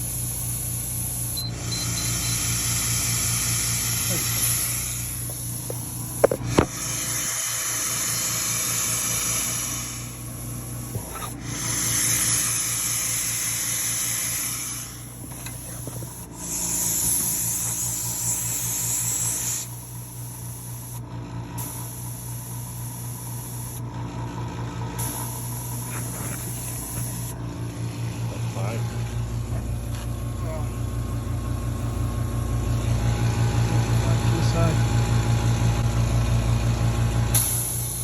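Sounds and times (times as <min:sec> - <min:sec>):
air hissing: 0:00.0 - 0:01.4, 0:02.0 - 0:21.0, 0:25.0 - 0:27.4, 0:37.3 - 0:38.0
tire inflator compressor pulsing: 0:00.0 - 0:38.0.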